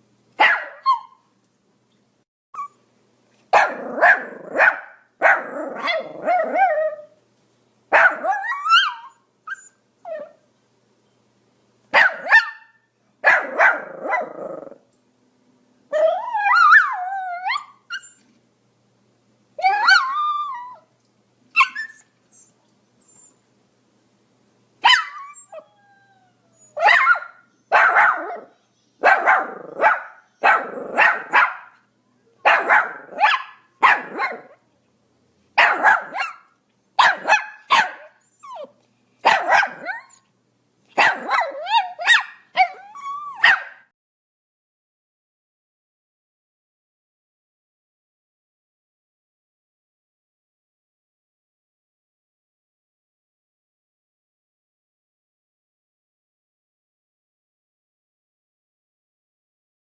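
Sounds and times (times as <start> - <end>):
small dog barking: 0.4 - 1.2, 3.5 - 7.1, 7.9 - 9.1, 11.9 - 14.8, 24.8 - 25.4, 26.8 - 34.6, 35.6 - 40.2, 40.9 - 43.9
dog whining: 5.4 - 7.2, 8.1 - 10.4, 16.0 - 18.3, 19.6 - 20.9, 21.6 - 23.4, 24.9 - 27.2, 38.0 - 38.8, 39.4 - 40.3, 41.0 - 43.6.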